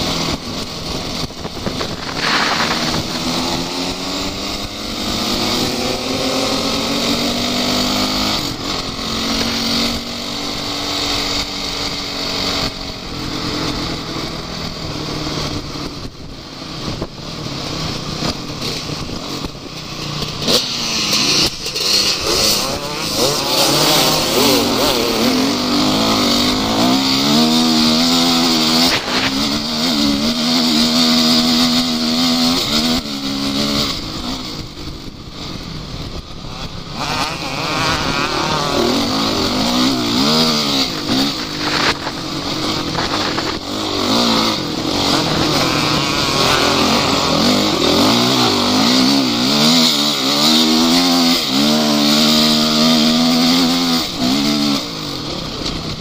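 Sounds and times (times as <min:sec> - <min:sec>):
off-road vehicle engine revving: 0:00.0 - 0:16.0, 0:16.7 - 0:56.0.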